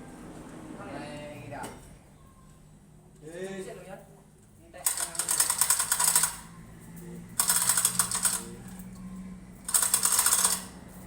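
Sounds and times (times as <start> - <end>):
chain hoist clicking and rattling: 7.4 - 8.5, 9.6 - 11.0.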